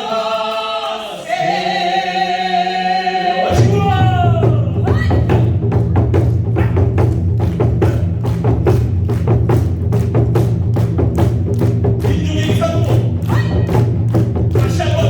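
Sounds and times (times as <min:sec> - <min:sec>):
rapid drum strokes: 0:03.5 - 0:15.0.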